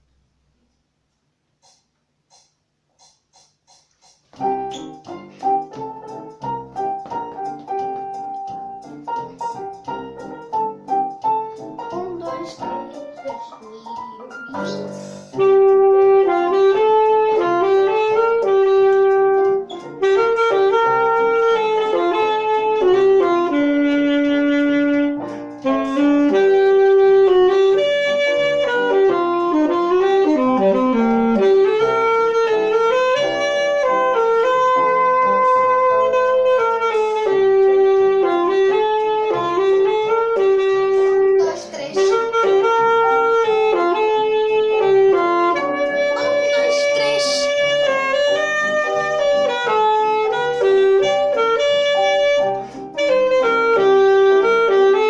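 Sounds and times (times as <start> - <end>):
saxophone slow melody: 14.7 - 41.4, 42.0 - 55.0.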